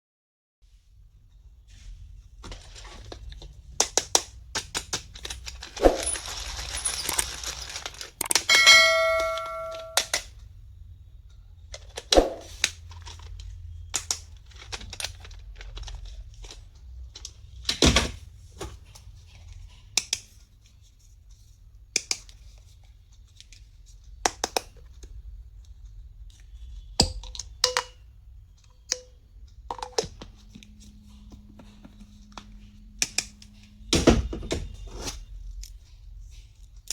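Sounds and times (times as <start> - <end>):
plastic items clicking: 2.4 - 8.6, 11.7 - 18.2
packaging rustling: 5.0 - 8.5
short ringing tone: 8.5 - 10.0.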